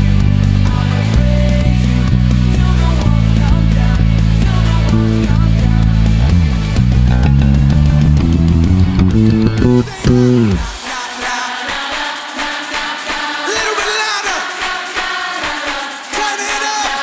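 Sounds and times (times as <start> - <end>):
electric bass guitar: 0.0 - 10.8
rock band playing: 4.3 - 10.8.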